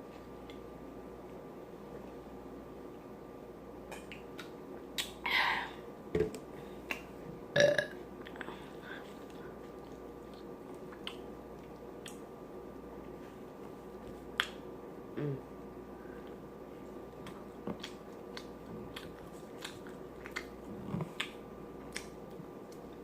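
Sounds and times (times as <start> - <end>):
woman burping: 7.6 - 8.0
wet mouth clicks and smacks: 10.8 - 11.3, 21.2 - 22.2.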